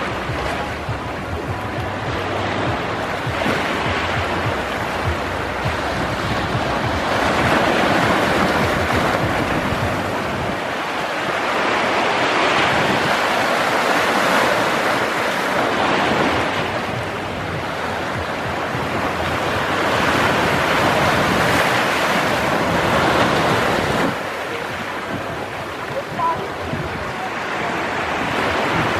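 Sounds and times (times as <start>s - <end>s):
sea waves breaking on rocks: 0.0s - 28.9s.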